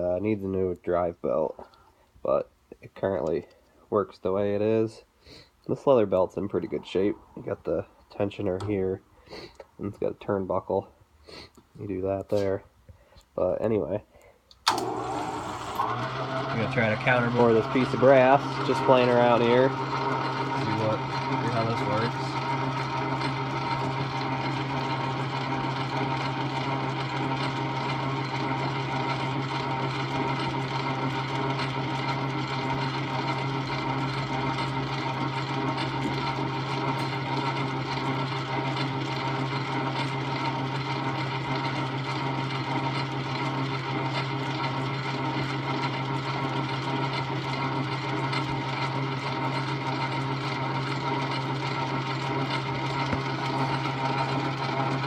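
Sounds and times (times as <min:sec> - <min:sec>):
metal lathe running: 0:14.7 - 0:55.0.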